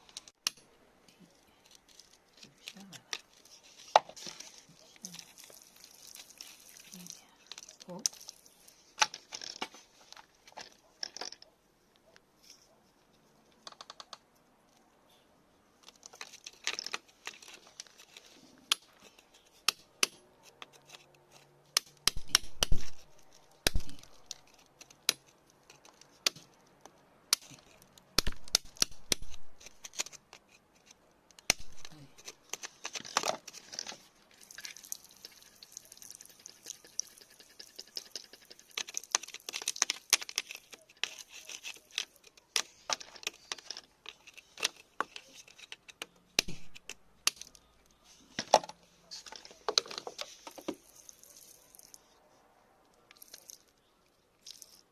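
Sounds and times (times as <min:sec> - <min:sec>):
stones clicking and knocking: 0:00.0 - 0:11.5, 0:15.8 - 0:52.0, 0:53.1 - 0:53.8, 0:54.4 - 0:54.9
scraping and rustling in soil: 0:01.2 - 0:10.8, 0:31.8 - 0:45.8.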